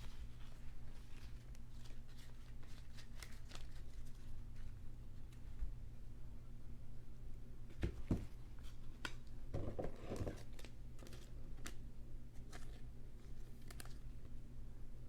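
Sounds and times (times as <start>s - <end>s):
plastic sleeves rustling: 0.0s - 5.5s, 8.6s - 11.8s.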